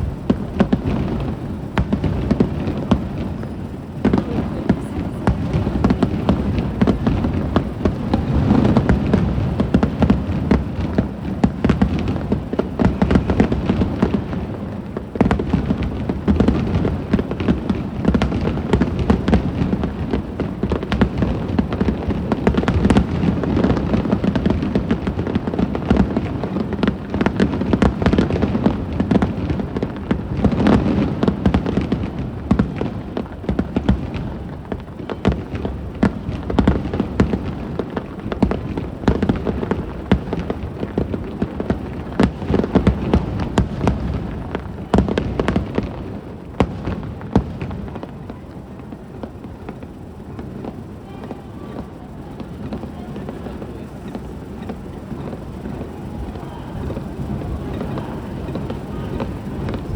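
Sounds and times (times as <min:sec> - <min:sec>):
fireworks bursting: 0:00.0 - 0:59.9.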